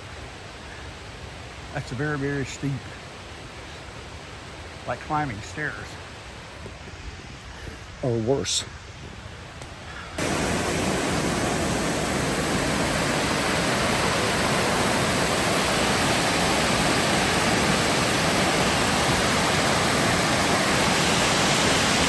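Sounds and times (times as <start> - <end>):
waterfall rushing: 10.1 - 22.0.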